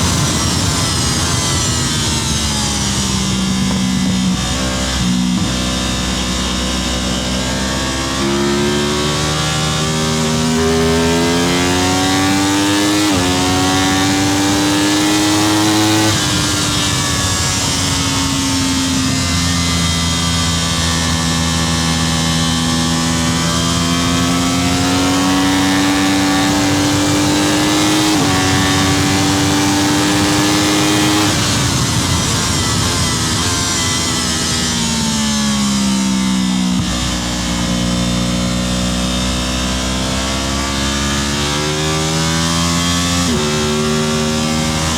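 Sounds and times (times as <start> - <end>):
wind noise: 0.0 - 8.2, 9.2 - 37.7
motorcycle engine accelerating: 0.0 - 44.9.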